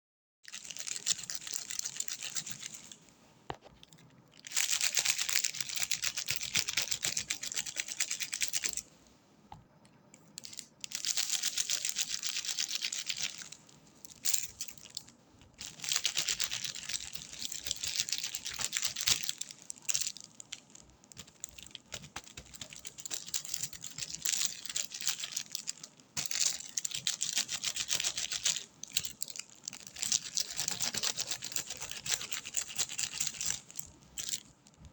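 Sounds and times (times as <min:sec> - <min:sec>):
crackling and scratching: 0:00.5 - 0:34.9.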